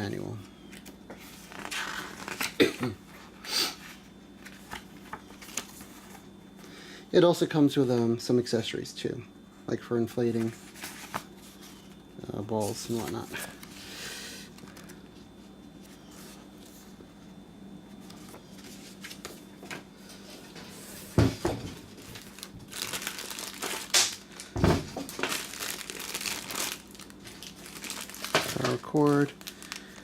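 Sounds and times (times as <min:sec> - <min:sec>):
plastic packaging crinkling: 0:21.9 - 0:30.0.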